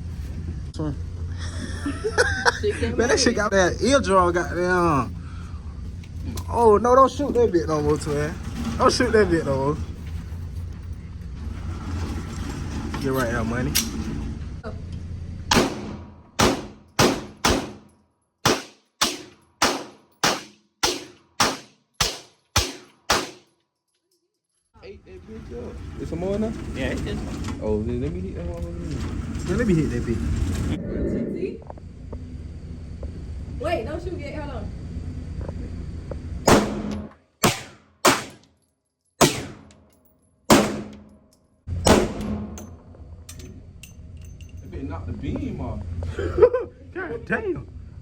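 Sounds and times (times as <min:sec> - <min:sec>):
gunshots: 0:15.5 - 0:23.4, 0:36.5 - 0:38.4, 0:39.2 - 0:39.7, 0:40.5 - 0:41.1, 0:41.8 - 0:42.6.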